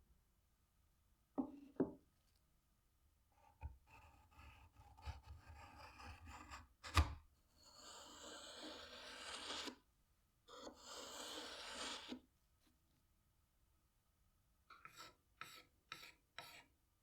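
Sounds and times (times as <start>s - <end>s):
rasp strokes across wood: 10.6s - 12.2s.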